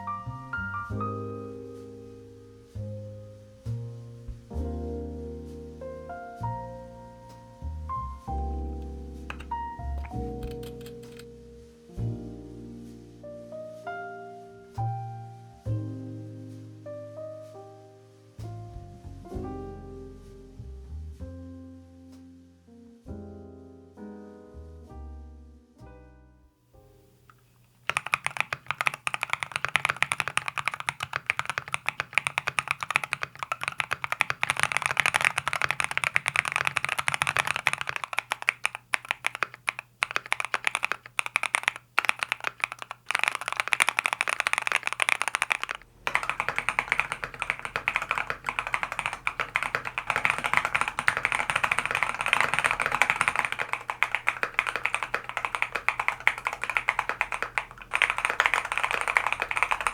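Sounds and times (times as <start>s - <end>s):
fast mechanical keyboard typing: 9.3s - 11.3s, 27.6s - 59.9s.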